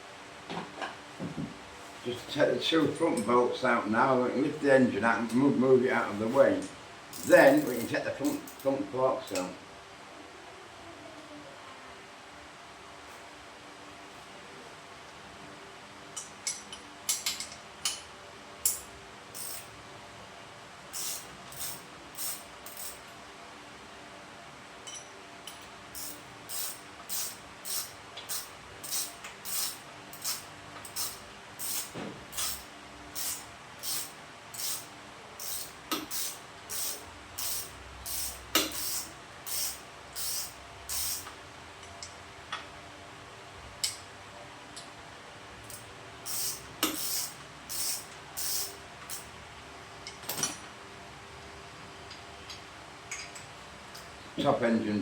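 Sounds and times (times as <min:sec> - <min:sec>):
ratchet spanner clicking: 0:07.1 - 0:08.7, 0:18.6 - 0:19.7, 0:20.9 - 0:23.0, 0:24.9 - 0:41.3, 0:45.7 - 0:49.3.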